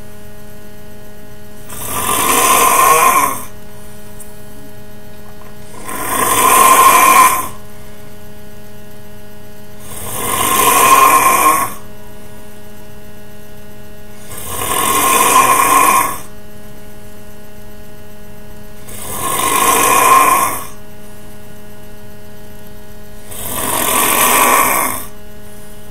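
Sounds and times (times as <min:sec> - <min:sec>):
steady hum: 0:00.0 - 0:25.9
person snoring loudly: 0:01.6 - 0:03.6, 0:05.6 - 0:07.6, 0:09.8 - 0:11.9, 0:14.2 - 0:16.3, 0:18.8 - 0:20.8, 0:23.2 - 0:25.2.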